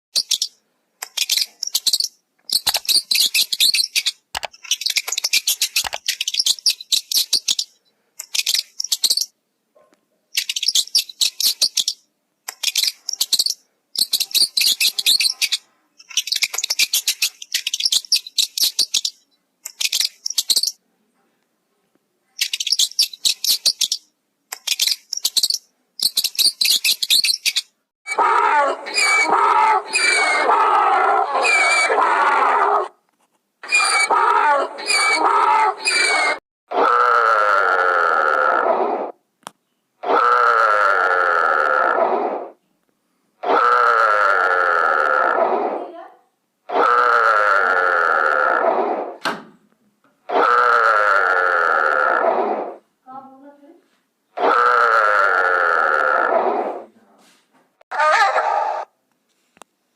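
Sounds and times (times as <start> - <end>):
bird chirping: 0.1 - 9.4, 10.3 - 20.8, 22.4 - 27.8, 33.6 - 34.2.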